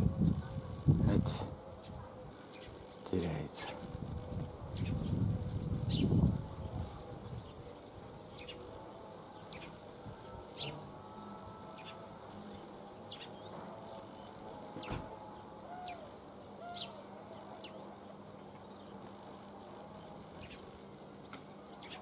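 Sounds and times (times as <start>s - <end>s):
small birds chirping: 0.0s - 22.0s.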